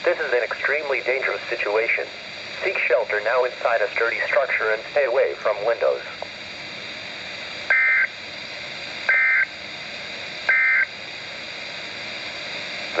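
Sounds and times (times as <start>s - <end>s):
steady hiss: 0.0s - 13.0s
buzzy digital data bursts: 7.7s - 9.6s, 10.4s - 11.0s.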